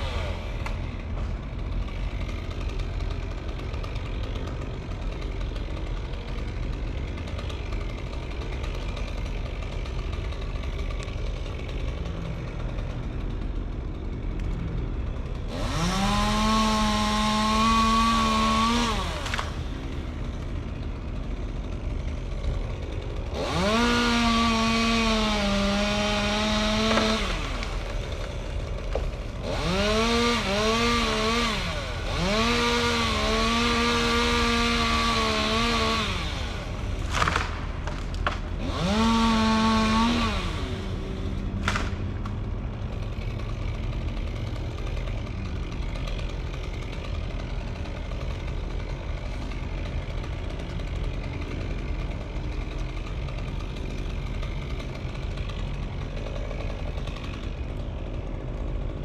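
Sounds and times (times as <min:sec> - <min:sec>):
chainsaw idling: 0:00.0 - 0:59.0
chainsaw revving: 0:00.0 - 0:59.0.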